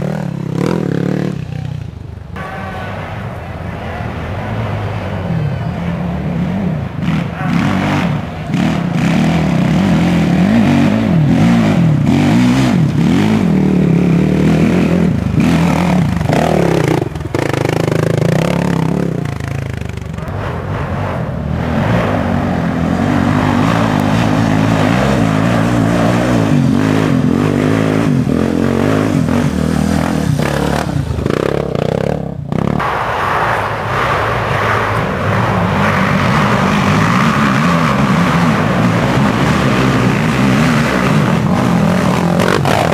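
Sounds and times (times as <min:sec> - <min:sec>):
quad engines revving: 0:00.0 - 0:03.1, 0:04.0 - 0:32.9, 0:33.8 - 0:42.9.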